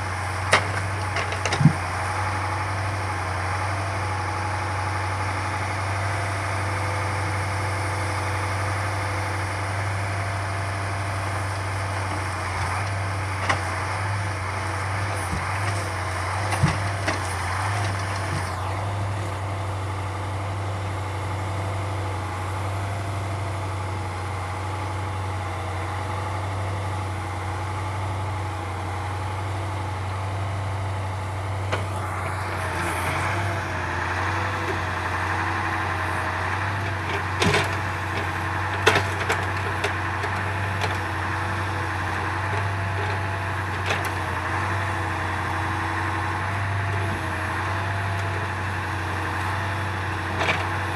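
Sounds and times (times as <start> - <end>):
truck engine running: 0.0 - 50.9
logs knocking on wood: 0.5 - 1.9.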